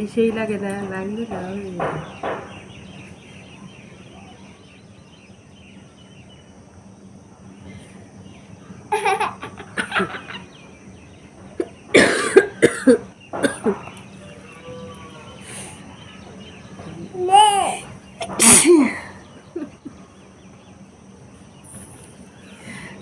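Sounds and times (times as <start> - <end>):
person sneezing loudly: 18.2 - 19.0.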